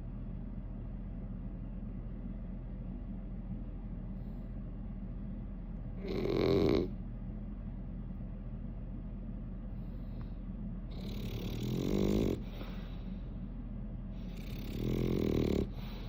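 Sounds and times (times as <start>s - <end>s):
steady low hum: 0.0s - 16.0s
loud rattling snore: 6.0s - 6.9s, 10.9s - 12.5s, 14.3s - 15.8s.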